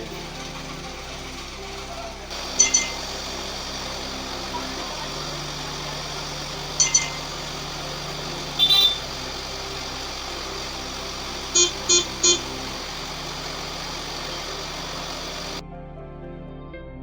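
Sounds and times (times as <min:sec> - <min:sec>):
low mechanical hum: 0:00.0 - 0:15.6
vehicle horn tooting: 0:08.3 - 0:09.2, 0:11.5 - 0:12.5.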